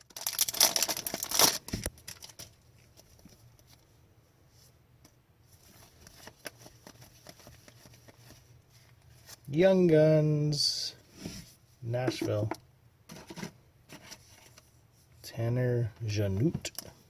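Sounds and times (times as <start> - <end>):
wrapper tearing and crinkling: 0.0 - 3.0.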